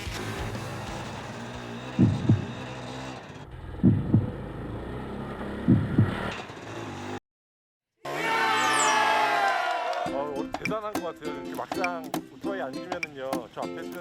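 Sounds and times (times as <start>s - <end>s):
engine idling hum: 0.0s - 6.3s
heartbeat double thumps: 2.0s - 2.6s, 3.7s - 4.4s, 5.6s - 6.3s.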